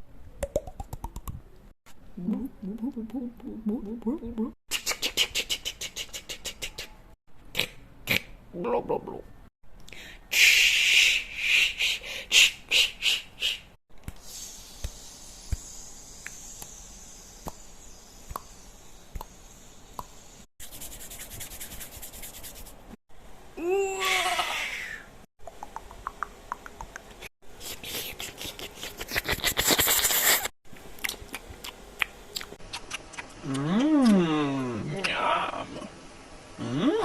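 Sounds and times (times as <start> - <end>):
steady high hiss: 14.1 - 20.5.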